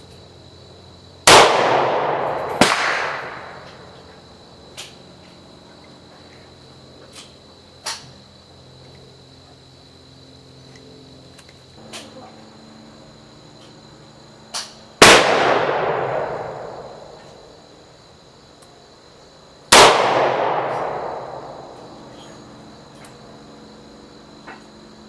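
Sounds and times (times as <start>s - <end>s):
revolver shots with echo: 1.3s - 3.8s, 15.0s - 17.2s, 19.7s - 21.8s.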